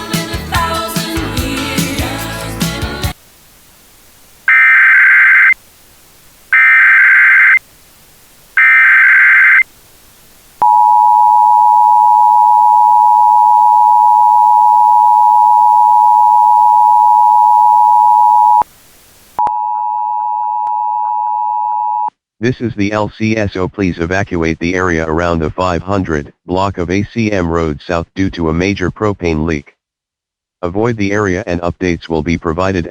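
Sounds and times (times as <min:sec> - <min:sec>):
digital header bursts: 0:04.5 - 0:05.6, 0:06.5 - 0:07.6, 0:08.6 - 0:09.6
two-tone attention signal: 0:04.5 - 0:05.6, 0:06.6 - 0:07.6, 0:08.6 - 0:09.6.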